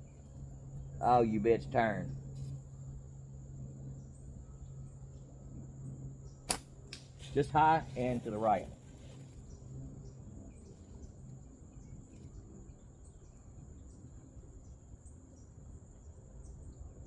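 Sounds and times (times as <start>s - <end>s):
insects buzzing: 0.0s - 16.0s.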